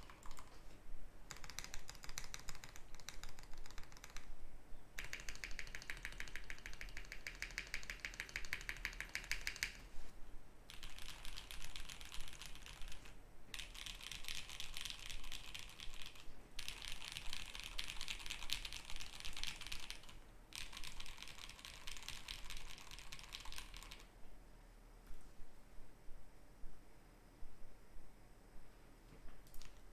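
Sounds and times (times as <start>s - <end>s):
mechanical keyboard typing: 0.0s - 0.6s, 1.3s - 4.3s, 5.0s - 9.8s, 10.7s - 24.1s, 29.5s - 29.9s.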